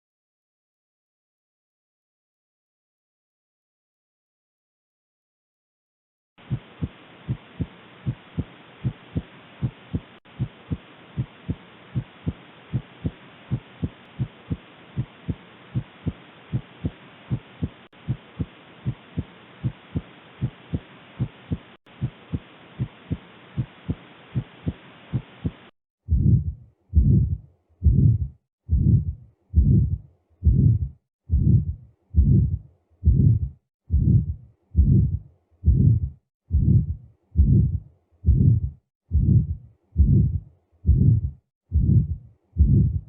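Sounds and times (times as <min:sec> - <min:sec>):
faint hiss: 0:06.4 - 0:25.7
heart murmur beats: 0:06.4 - 0:43.0
heartbeat through stethoscope: 0:06.4 - 0:43.0.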